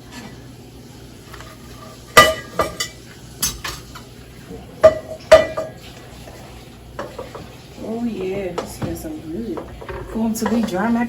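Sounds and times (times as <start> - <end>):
metal pots and pans clanking: 1.3 - 4.1, 4.8 - 6.0, 8.2 - 11.0.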